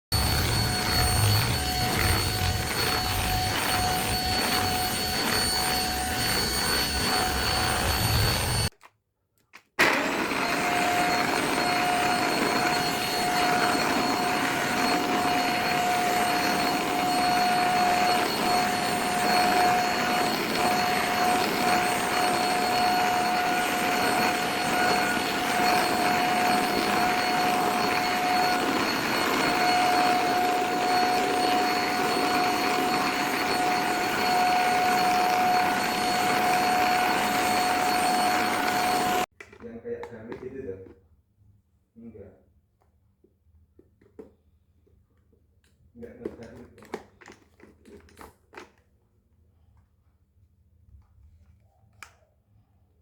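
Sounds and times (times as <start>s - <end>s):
vacuum cleaner running: 0.1s - 8.7s, 9.8s - 39.3s.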